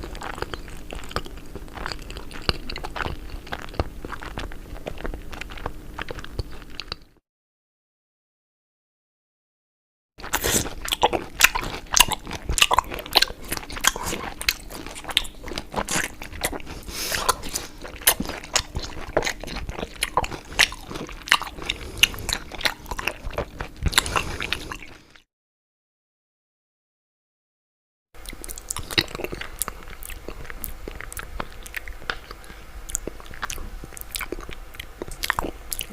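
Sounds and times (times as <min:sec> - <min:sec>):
crunchy food being chewed: 0:00.0 - 0:07.2, 0:10.2 - 0:25.3, 0:28.2 - 0:35.9.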